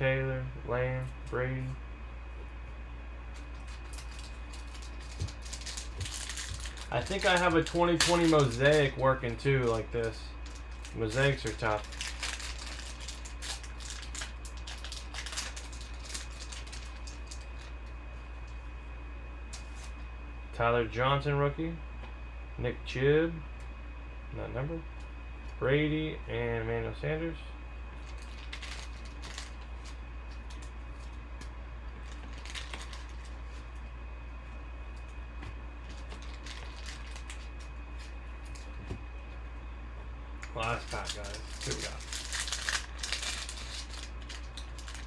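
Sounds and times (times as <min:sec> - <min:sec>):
steady low hum: 0:00.0 - 0:45.0
card pack rustling and clicking: 0:03.3 - 0:17.8, 0:28.0 - 0:31.2, 0:32.0 - 0:33.7, 0:35.8 - 0:38.8, 0:40.6 - 0:45.0.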